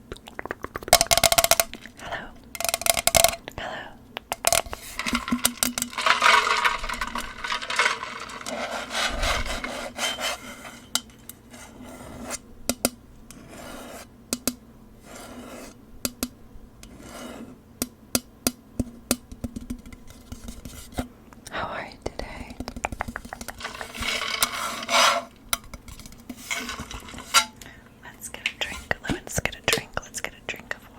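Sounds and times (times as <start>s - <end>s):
sharp clicks and taps: 0.1s - 1.9s, 17.8s - 20.6s, 22.1s - 24.0s
rubbing and scraping swishes: 4.6s - 12.4s, 22.9s - 25.4s, 26.2s - 27.6s.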